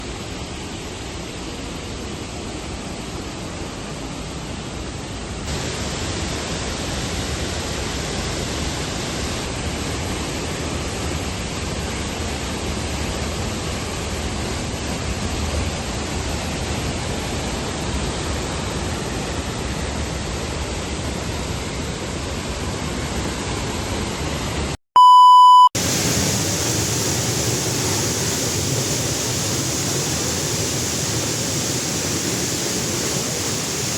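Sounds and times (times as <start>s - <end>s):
waterfall rushing: 0.0s - 24.8s, 25.8s - 33.9s
loud steady beep: 24.9s - 25.8s.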